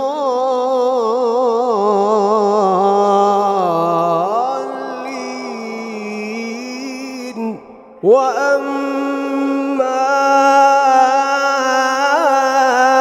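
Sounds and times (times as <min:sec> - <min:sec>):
man reciting melodically: 0:00.0 - 0:13.0.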